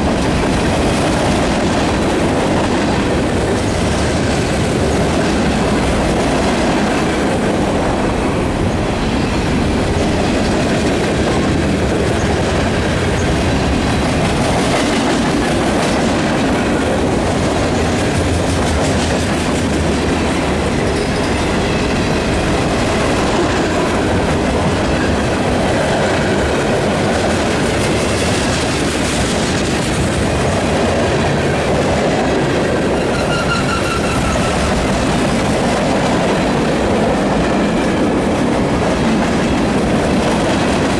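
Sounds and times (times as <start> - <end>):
clickety-clack over rail joints: 0.0 - 40.9
freight train wheels rumbling: 0.0 - 40.9
faint wheel squeal: 33.0 - 34.8.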